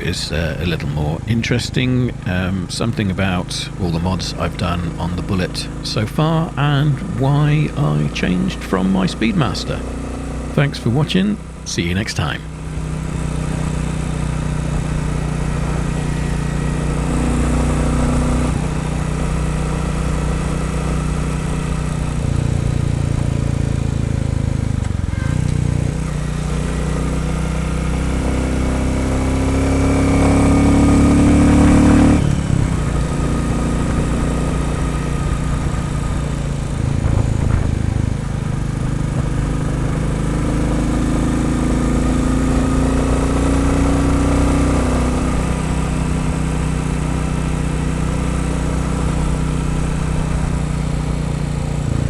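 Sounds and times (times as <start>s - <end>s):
motorcycle engine revving: 12.4s - 52.0s.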